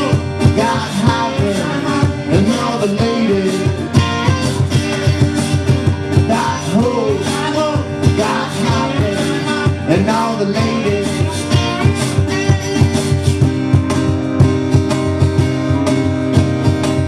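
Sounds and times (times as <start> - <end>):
live country-rock band: 0.0 - 17.0.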